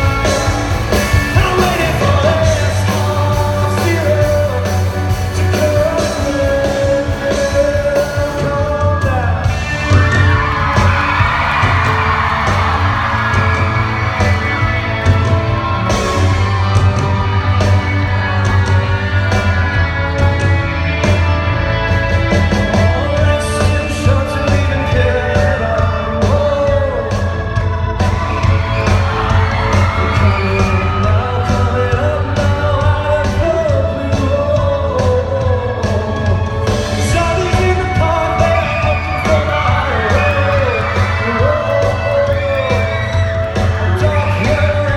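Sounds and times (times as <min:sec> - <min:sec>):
heavy bass: 0:00.0 - 0:44.9
live band playing pop-rock: 0:00.0 - 0:44.9.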